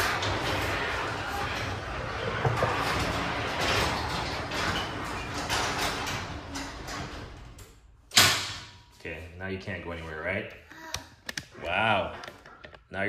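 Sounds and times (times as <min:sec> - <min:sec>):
garage door rumbling and rattling: 0:00.0 - 0:09.0.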